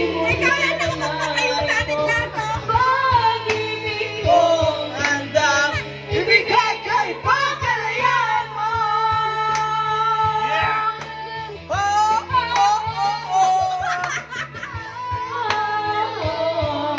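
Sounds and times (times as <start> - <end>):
bass line and beat: 0.0 - 16.9
high sung voice: 0.0 - 16.9.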